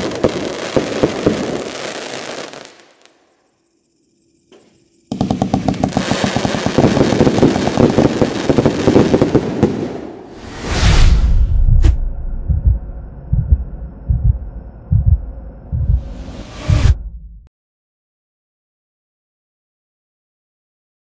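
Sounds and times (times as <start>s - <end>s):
firework cake crackling pops: 5.1s - 9.9s.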